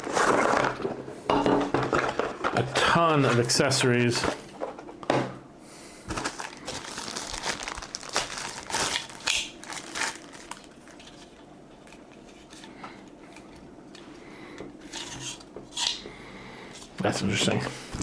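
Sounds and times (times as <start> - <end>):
plastic packaging crinkling: 6.1 - 12.6.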